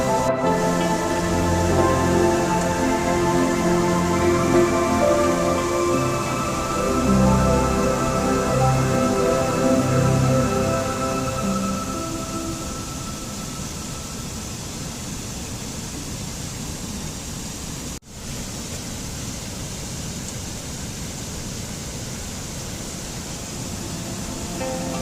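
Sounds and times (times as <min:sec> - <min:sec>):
rushing water: 0:00.0 - 0:25.0.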